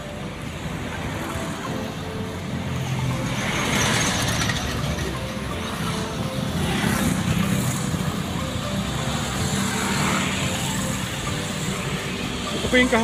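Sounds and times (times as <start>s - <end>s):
road traffic: 0.0s - 13.0s.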